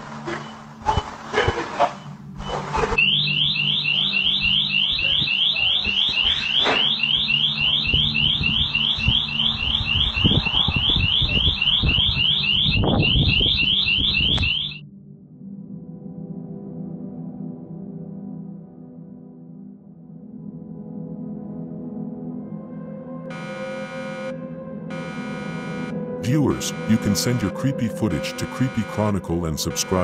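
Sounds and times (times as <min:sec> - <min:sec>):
electronic alarm siren chirping: 0:02.4 - 0:14.8, 0:23.3 - 0:30.0.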